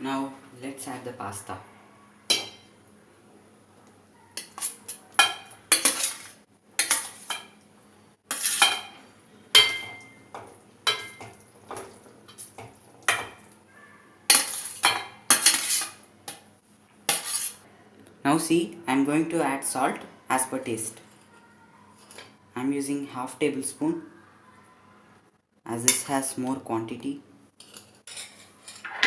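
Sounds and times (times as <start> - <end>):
spoon scraping a pan: 4.4 - 7.6, 8.2 - 13.5, 14.3 - 16.4, 17.1 - 17.6, 27.6 - 29.0.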